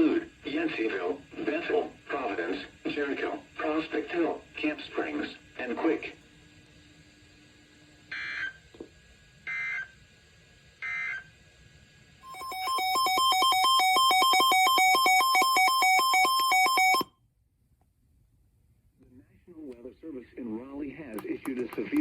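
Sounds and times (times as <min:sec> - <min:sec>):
digital data tone bursts: 0:12.2 - 0:17.1.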